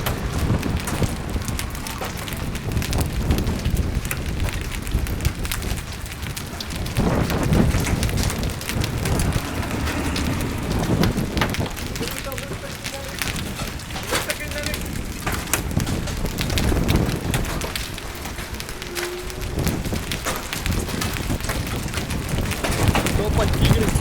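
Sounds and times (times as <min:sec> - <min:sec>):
low rumble: 0:00.0 - 0:14.0
heavy rain hiss: 0:00.0 - 0:21.3.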